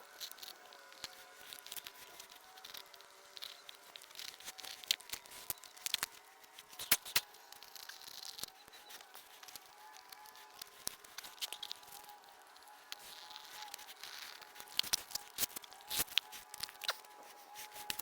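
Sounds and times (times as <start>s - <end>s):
rubber mat crackling and tearing: 0.2s - 18.0s.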